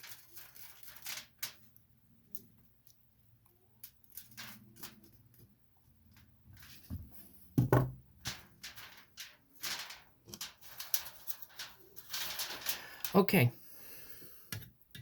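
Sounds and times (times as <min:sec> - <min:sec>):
heavy thump: 0:07.0 - 0:08.0.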